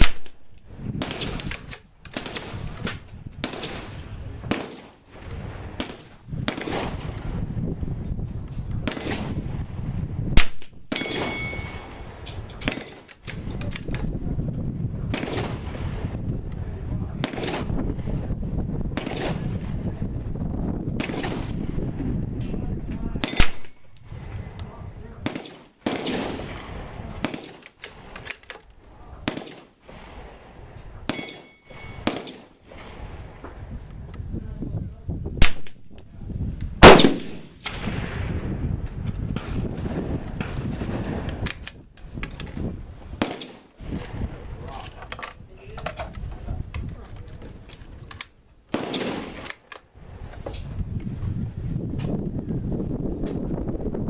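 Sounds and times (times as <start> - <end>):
rifle shots: 0.0 - 7.2, 8.8 - 9.7, 10.4 - 14.1, 15.1 - 16.2, 17.2 - 18.2, 19.0 - 19.8, 21.0 - 21.8, 23.2 - 24.1, 25.2 - 28.6, 29.2 - 33.4, 35.4 - 36.0, 36.8 - 38.5, 43.2 - 44.4, 48.7 - 49.9
wind rumble on microphone: 0.0 - 54.0.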